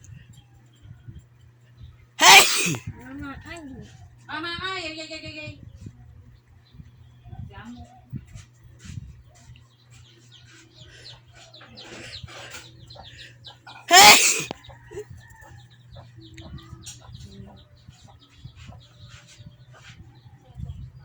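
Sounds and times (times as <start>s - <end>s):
person sneezing: 2.2s - 2.8s, 13.9s - 14.5s
chickens clucking: 10.6s - 13.9s.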